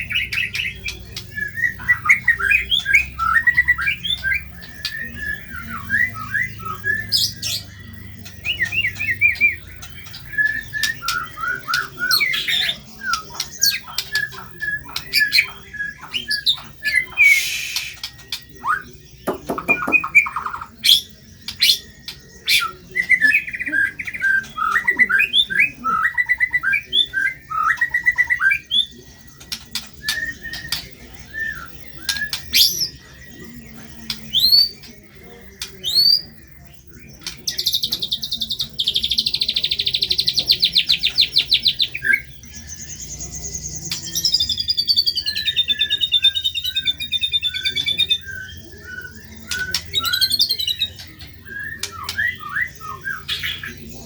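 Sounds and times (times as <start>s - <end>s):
buzzy bird trill: 0.0s - 54.0s
songbird singing whistles: 0.0s - 54.0s.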